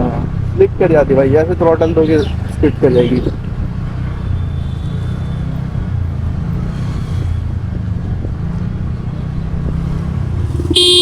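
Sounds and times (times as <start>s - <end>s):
road noise: 0.0s - 11.0s
scooter engine running: 10.4s - 11.0s
vehicle horn honking: 10.7s - 11.0s.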